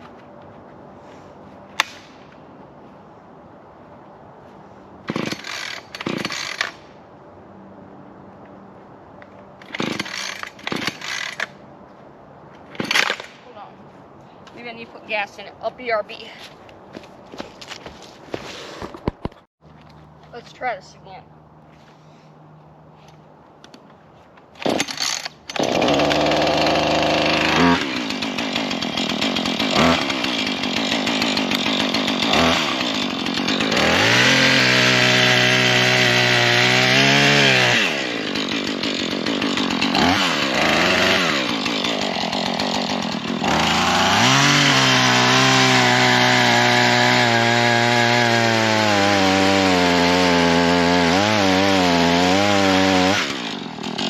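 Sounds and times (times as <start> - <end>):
chainsaw revving: 5.1 - 6.8, 9.6 - 11.5, 24.6 - 54.0
chainsaw starting bursts: 5.1 - 6.8, 9.6 - 11.5, 24.6 - 54.0.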